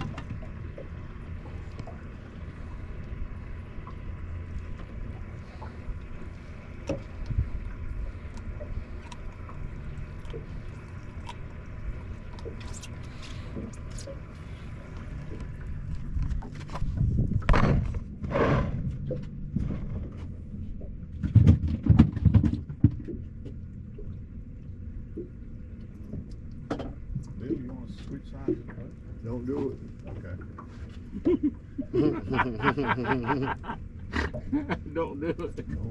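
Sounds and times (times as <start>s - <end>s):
boat engine low hum: 0.0s - 35.9s
thumping and rustling: 21.2s - 23.2s.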